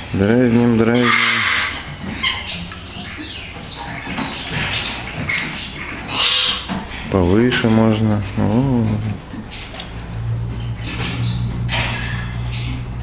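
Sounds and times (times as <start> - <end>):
bird raspy call: 0.9 - 12.6
bird chirps and squawks: 1.0 - 6.9.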